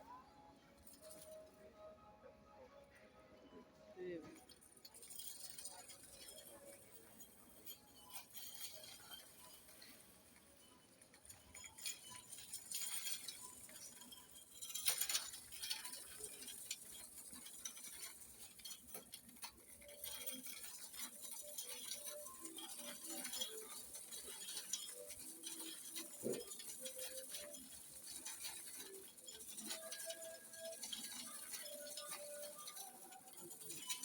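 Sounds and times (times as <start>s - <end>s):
small hard objects clinking: 4.3s - 34.0s.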